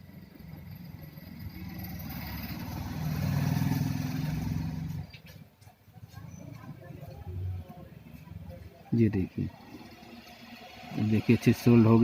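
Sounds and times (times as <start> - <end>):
motor vehicle engine running: 0.0 - 5.3.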